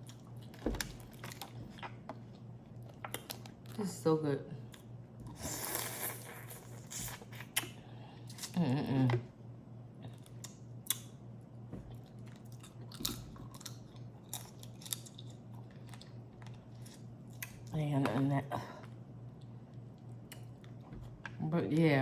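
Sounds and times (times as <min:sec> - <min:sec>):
shells cracking and peeling: 0:12.4 - 0:16.1.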